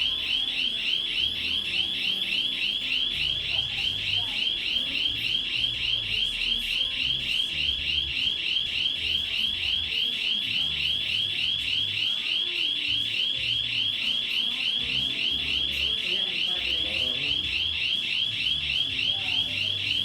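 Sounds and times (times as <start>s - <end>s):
electronic panic alarm sweeping tone: 0.0s - 20.0s.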